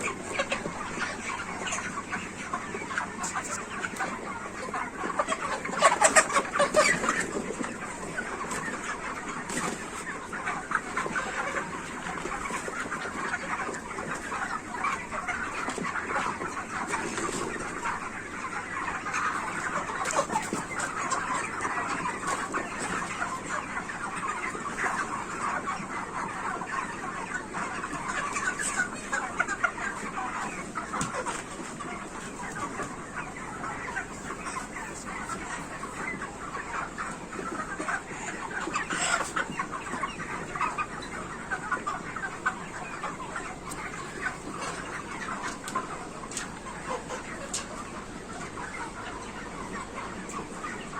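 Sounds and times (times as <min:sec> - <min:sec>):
chickens clucking and chirping: 0:00.0 - 0:50.9.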